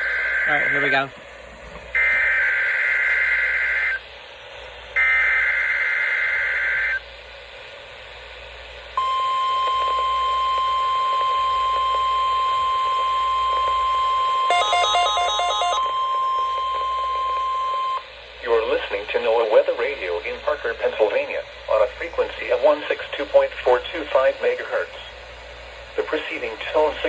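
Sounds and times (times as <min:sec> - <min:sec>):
steady alarm tone: 0:00.0 - 0:01.2, 0:09.0 - 0:18.1.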